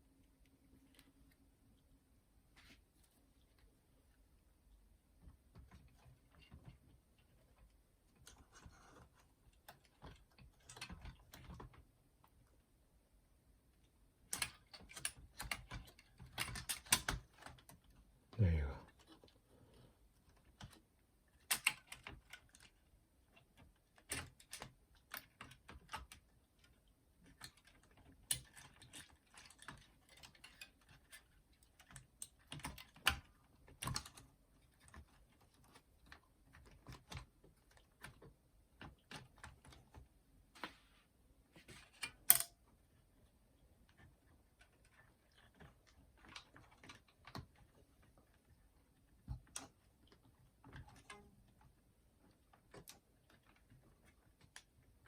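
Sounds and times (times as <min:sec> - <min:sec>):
clicks and taps of plastic parts: 0:14.3 - 0:18.1, 0:41.6 - 0:42.6, 0:43.8 - 0:55.0.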